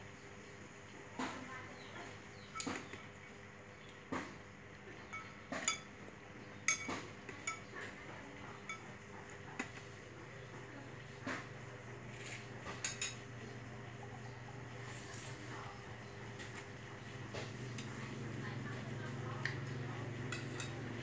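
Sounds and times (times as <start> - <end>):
metal utensils clinking on pots: 5.1 - 6.0, 6.7 - 8.0, 8.6 - 9.0, 12.3 - 13.3, 17.7 - 18.0, 20.1 - 21.0.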